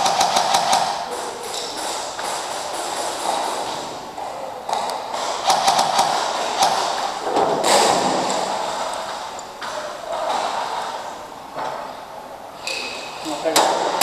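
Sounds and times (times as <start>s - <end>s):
airsoft gunfire: 0.0s - 3.9s, 5.1s - 8.7s
pellets striking hard surfaces: 0.0s - 9.8s.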